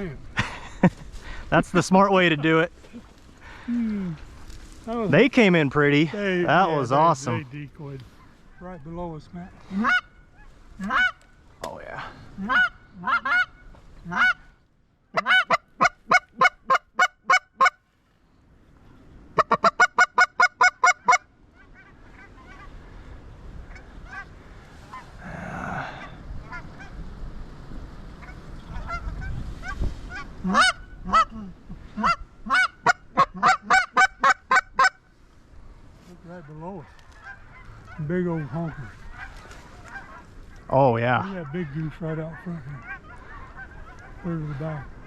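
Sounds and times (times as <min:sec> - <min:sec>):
geese honking: 0:09.4 - 0:11.4, 0:12.4 - 0:14.5, 0:15.1 - 0:17.8, 0:19.4 - 0:23.0, 0:23.6 - 0:25.2, 0:26.4 - 0:27.0, 0:28.2 - 0:35.2, 0:36.2 - 0:45.0
wind noise: 0:20.9 - 0:36.1.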